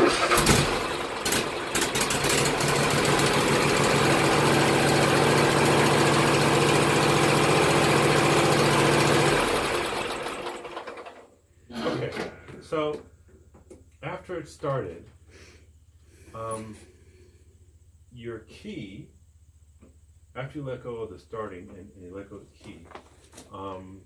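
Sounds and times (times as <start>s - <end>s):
lawn mower engine starting: 0.0s - 11.3s.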